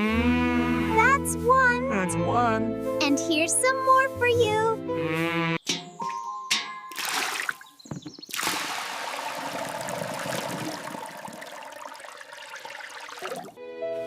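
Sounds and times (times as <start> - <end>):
running water: 6.5 - 13.6.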